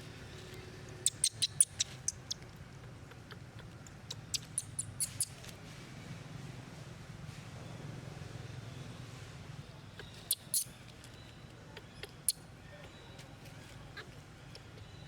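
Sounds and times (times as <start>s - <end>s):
baby monkey squeaking: 1.0s - 5.4s, 10.0s - 10.8s, 11.8s - 13.0s, 13.9s - 15.0s.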